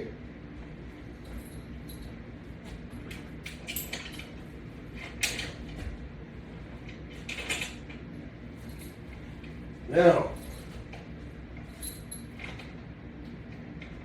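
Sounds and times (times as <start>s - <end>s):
metal carabiner clinking and rattling: 1.2s - 2.2s, 2.9s - 4.4s, 8.6s - 9.2s, 10.1s - 11.0s, 11.6s - 12.7s.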